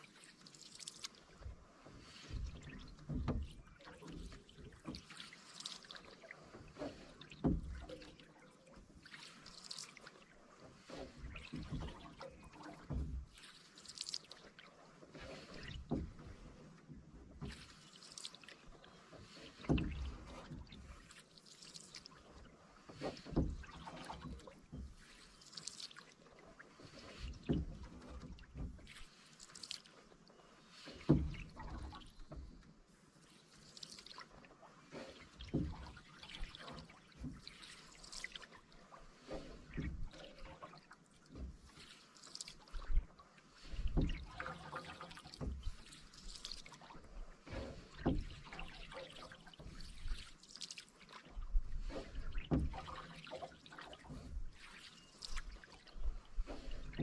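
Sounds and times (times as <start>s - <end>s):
paddle splashing through water: 0.0s - 57.0s
low thumps of paddle strokes: 42.8s - 50.3s, 51.2s - 57.0s.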